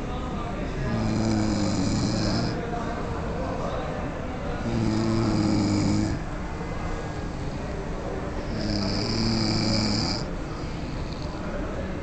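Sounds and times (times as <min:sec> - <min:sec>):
man snoring: 0:00.9 - 0:02.6, 0:04.6 - 0:06.2, 0:08.4 - 0:11.3
breathing: 0:10.4 - 0:11.4.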